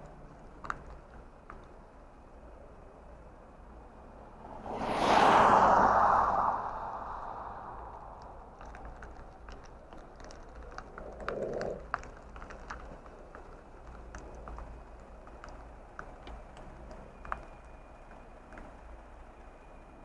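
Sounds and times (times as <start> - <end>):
car road hum: 0.0 - 20.0
rattling clicks and ticks: 8.6 - 17.8.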